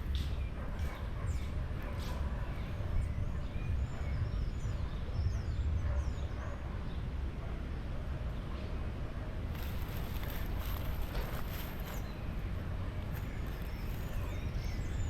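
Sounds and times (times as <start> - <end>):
birds chirping: 0.0 - 15.0
steady low rumble: 8.0 - 15.0.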